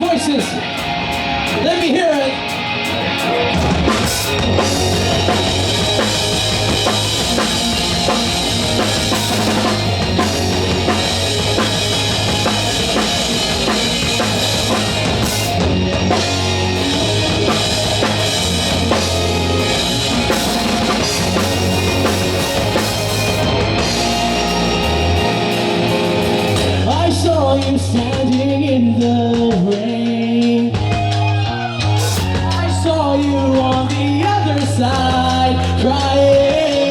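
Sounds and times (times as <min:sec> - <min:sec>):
drum kit: 0:00.0 - 0:36.9
guitars: 0:00.0 - 0:36.9
live rock band playing: 0:00.0 - 0:36.9
steady bass line: 0:00.0 - 0:36.9
gliding melody line: 0:00.9 - 0:27.4.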